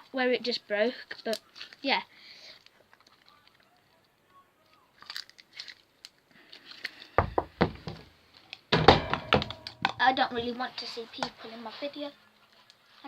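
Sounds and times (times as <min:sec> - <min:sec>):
heavier bumps and knocks: 0:07.2 - 0:08.1, 0:08.7 - 0:10.0.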